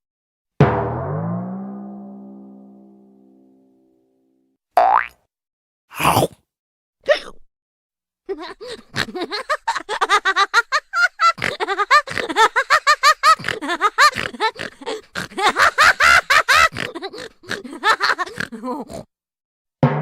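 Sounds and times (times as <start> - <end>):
cartoon laughter: 8.3 - 19.1.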